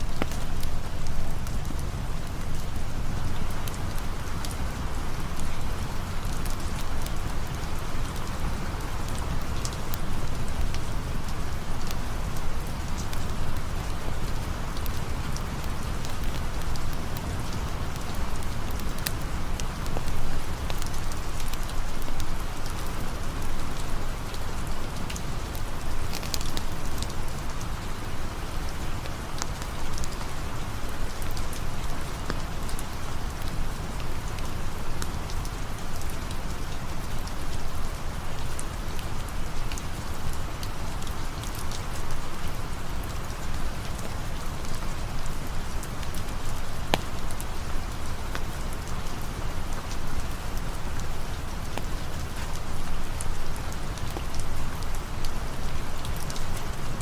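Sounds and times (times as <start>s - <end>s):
campfire crackling and popping: 0.0s - 5.8s, 9.1s - 22.9s, 24.3s - 27.3s, 30.9s - 33.6s, 38.8s - 57.0s
rain falling: 0.0s - 57.0s.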